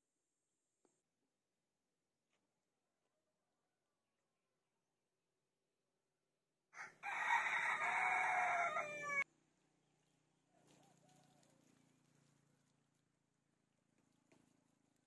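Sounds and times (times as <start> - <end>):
rooster crowing: 6.8 - 9.3.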